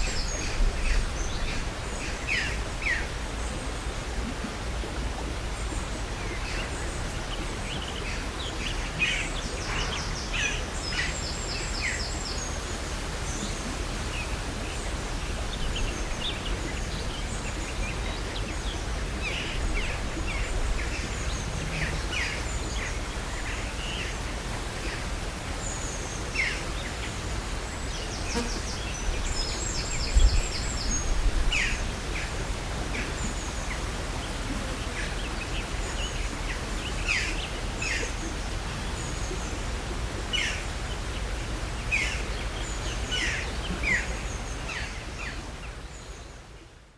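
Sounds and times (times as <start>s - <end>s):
low wind rumble: 0.0s - 7.8s, 28.8s - 37.0s.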